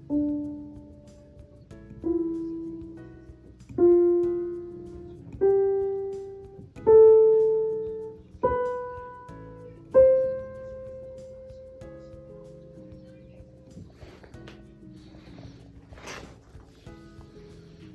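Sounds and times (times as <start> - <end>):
slow piano melody: 0.0 - 17.9.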